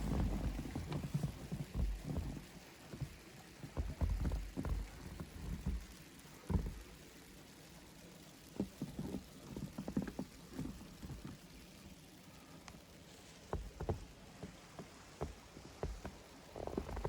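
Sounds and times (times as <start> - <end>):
footsteps crunching in snow: 0.0 - 2.4.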